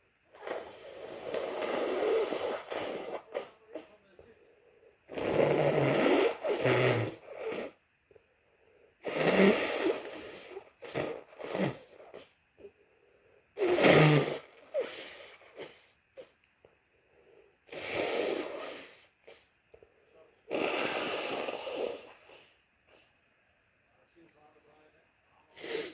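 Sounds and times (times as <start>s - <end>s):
person blowing nose: 0.3s - 3.9s, 5.1s - 7.8s, 9.0s - 12.4s, 13.6s - 16.4s, 17.7s - 19.5s, 20.5s - 23.1s, 25.6s - 25.9s
person sneezing: 25.5s - 25.9s.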